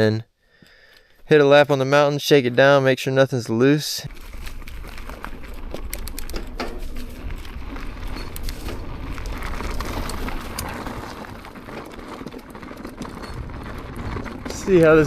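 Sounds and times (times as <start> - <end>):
mountain bike tyres on dirt trail: 4.0 - 15.0
bike clicks and rattles: 4.1 - 15.0.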